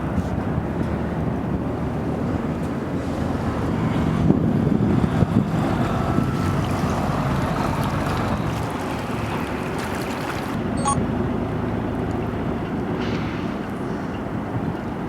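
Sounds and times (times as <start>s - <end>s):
wind buffeting microphone: 0.0s - 10.6s
boat motor running: 0.0s - 13.0s.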